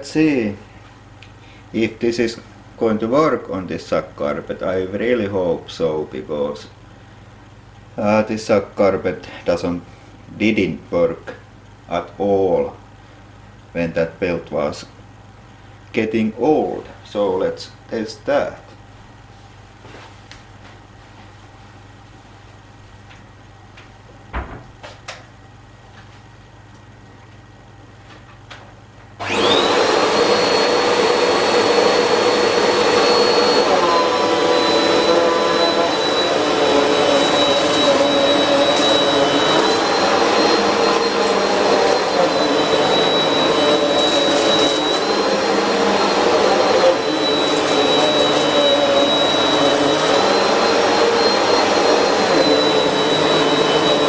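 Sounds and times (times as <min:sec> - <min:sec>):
vacuum cleaner motor whine: 0:29.2 - 0:54.0.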